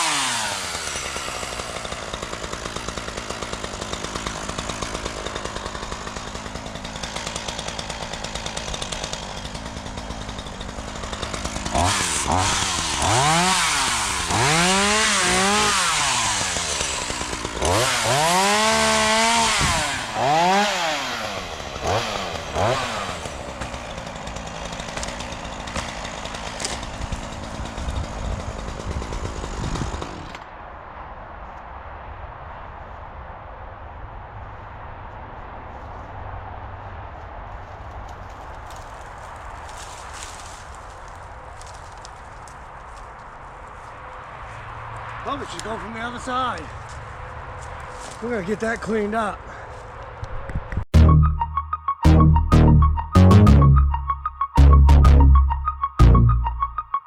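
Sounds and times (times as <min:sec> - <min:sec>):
chainsaw idling and revving: 0:00.0 - 0:30.5, 0:45.3 - 0:46.7, 0:51.0 - 0:54.0.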